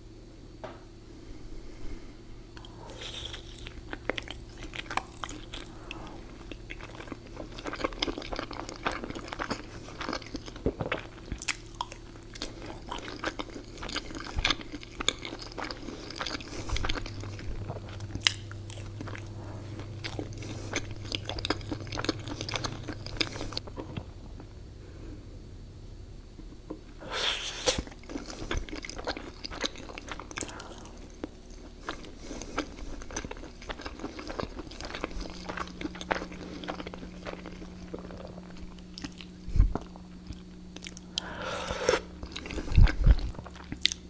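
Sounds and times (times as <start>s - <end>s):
faint steady hum: 0.0s - 44.0s
person chewing crunchy food: 2.5s - 25.2s, 26.4s - 44.0s.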